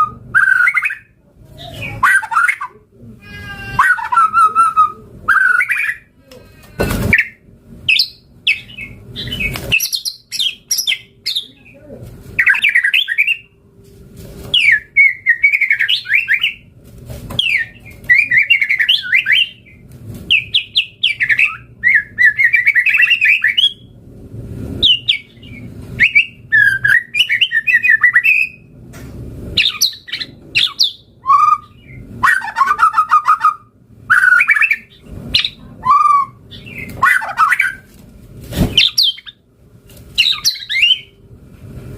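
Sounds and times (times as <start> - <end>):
songbird singing whistles: 7.2 - 11.5, 12.4 - 13.5, 14.6 - 16.6, 17.4 - 23.9, 24.8 - 28.7, 29.6 - 37.9, 40.2 - 41.2.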